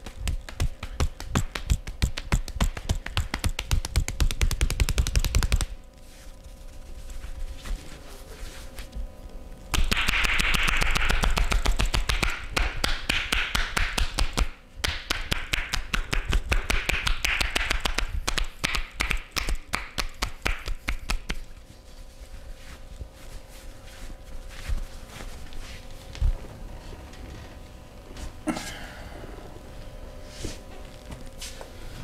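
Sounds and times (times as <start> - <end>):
hands tapping and slapping on body: 0.0 - 5.8, 9.7 - 21.5.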